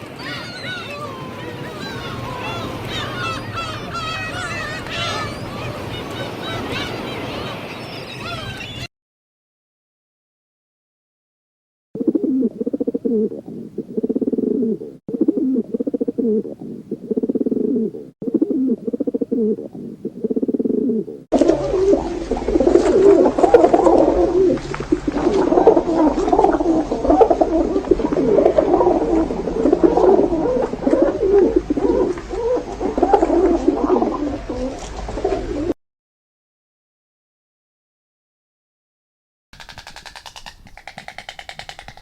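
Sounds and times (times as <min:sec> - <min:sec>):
pigeons cooing: 0:12.0 - 0:35.8.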